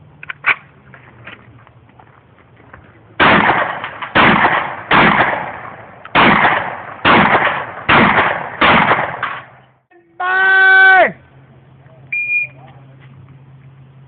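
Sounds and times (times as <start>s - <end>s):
shotgun shots echoing: 3.2s - 9.6s.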